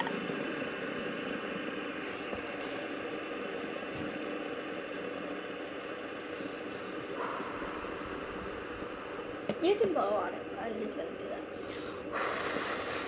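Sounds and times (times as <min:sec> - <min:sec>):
fidget spinner whirring: 0:06.2 - 0:13.0.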